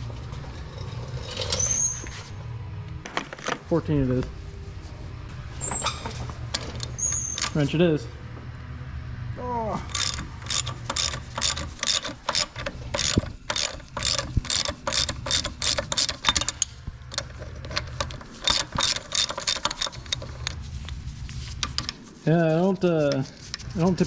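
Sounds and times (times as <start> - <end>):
ratchet wrench clicking: 6.5 - 7.6, 9.9 - 20.6.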